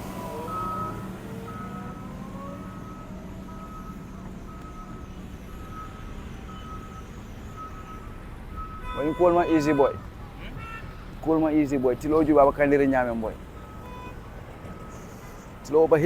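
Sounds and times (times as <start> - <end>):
vehicle engine running: 0.0 - 9.1
reversing alarm beeping: 0.0 - 10.9, 13.6 - 15.5.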